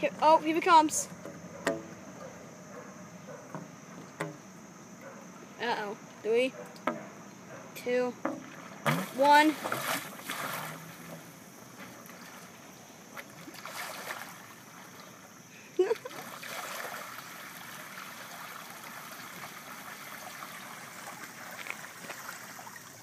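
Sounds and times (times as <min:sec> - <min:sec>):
water trickling from pipe: 0:16.0 - 0:23.0.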